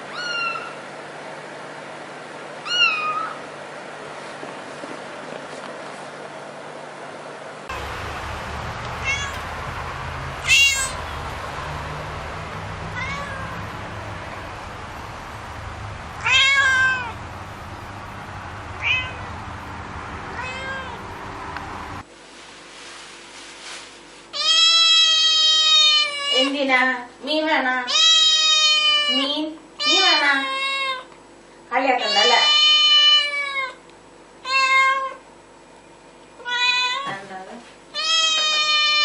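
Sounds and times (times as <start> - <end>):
cat meowing: 0.1 - 0.8, 2.6 - 3.4, 9.0 - 9.5, 10.4 - 11.1, 12.8 - 13.9, 16.2 - 17.2, 18.8 - 19.4, 20.4 - 21.1, 24.4 - 26.5, 27.9 - 29.2, 32.0 - 33.8, 34.4 - 35.2, 36.4 - 37.2, 38.0 - 39.0
low hum: 7.7 - 22.1.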